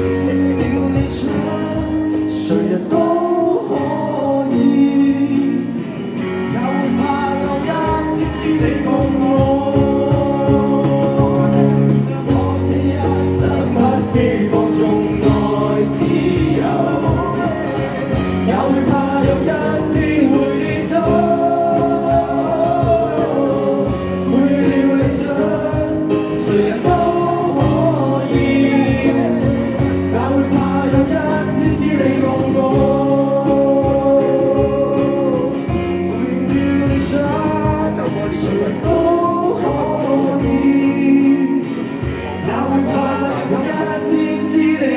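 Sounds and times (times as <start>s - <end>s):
steady drum beat: 0.0s - 2.3s, 7.5s - 41.2s
guitar: 0.0s - 44.9s
person singing: 0.0s - 44.9s.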